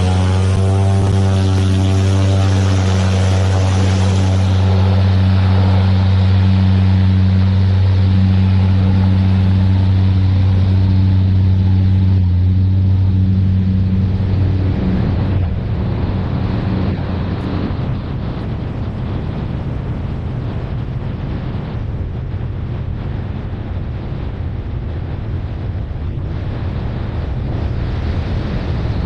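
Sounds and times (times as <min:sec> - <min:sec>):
turboprop propeller drone: 0:00.0 - 0:29.0.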